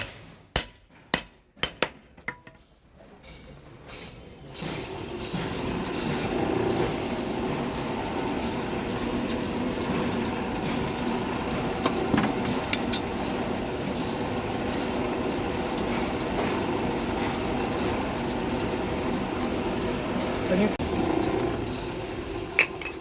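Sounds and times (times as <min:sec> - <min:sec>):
machine humming and rumbling: 0:03.7 - 0:23.0.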